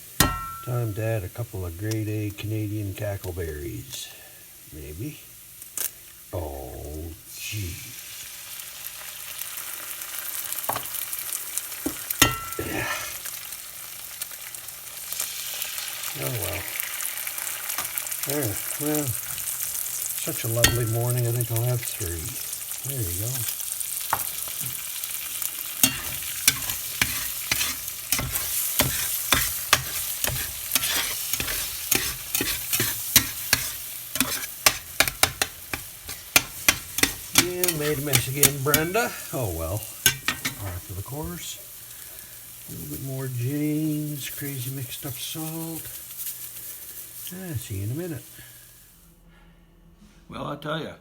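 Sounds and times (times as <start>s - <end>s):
utensil scraping a frying pan: 0.0s - 1.0s, 11.9s - 13.4s, 20.4s - 22.5s, 25.6s - 41.5s
mushrooms sizzling in pan: 0.0s - 49.1s
knocks on pan: 0.2s - 0.7s
metallic clink: 0.2s - 0.8s, 25.8s - 28.4s.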